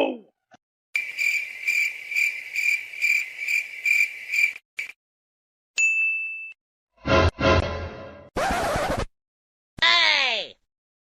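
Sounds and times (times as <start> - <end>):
cricket chirping: 1.0 - 4.9.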